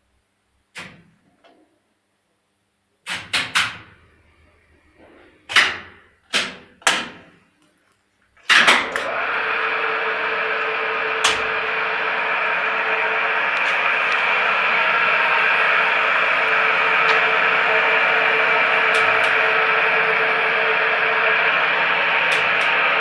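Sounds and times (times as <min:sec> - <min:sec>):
machine whirring: 0:08.5 - 0:23.0
constant hum: 0:08.7 - 0:23.0.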